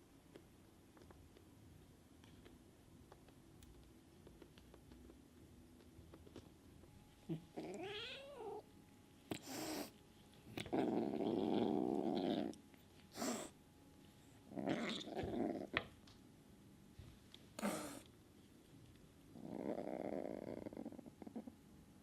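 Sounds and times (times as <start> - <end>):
kitten growling: 7.2 - 8.7, 9.3 - 13.6, 14.5 - 15.8, 17.6 - 18.1, 19.3 - 21.6
kitten hissing: 9.3 - 10.0, 13.1 - 13.6, 17.6 - 18.1.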